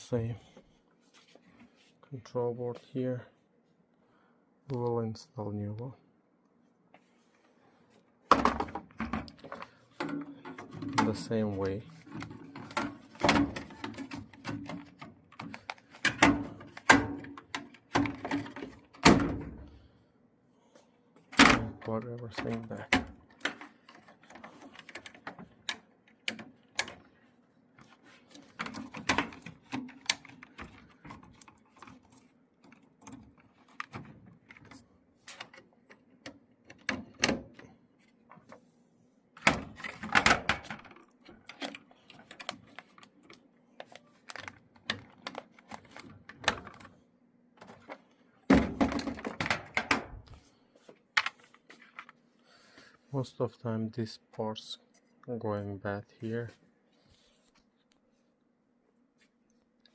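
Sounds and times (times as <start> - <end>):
plastic and metal parts clicking: 21.3 - 27.2, 27.8 - 37.7, 39.4 - 47.0.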